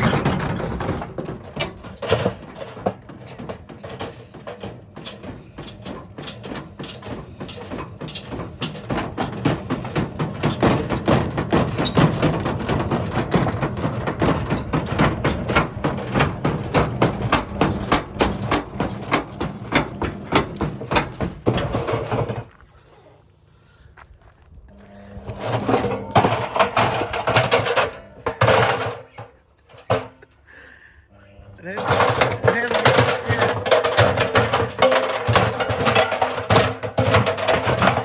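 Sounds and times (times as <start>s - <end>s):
washing machine knocking: 0.0s - 22.1s, 31.7s - 38.0s.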